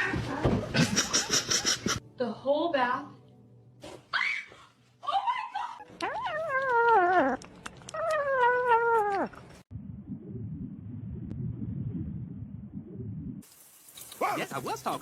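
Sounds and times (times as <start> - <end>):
low rumbling noise: 9.7 - 13.4.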